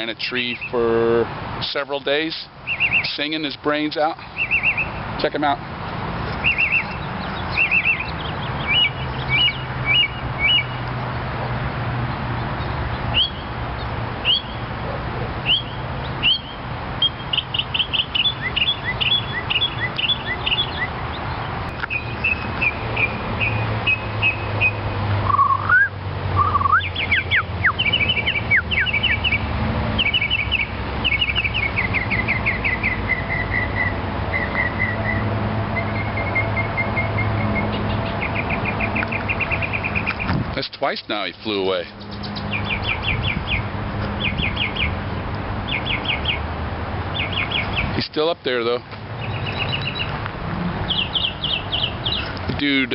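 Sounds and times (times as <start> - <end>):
songbird singing: 0.0 - 52.9.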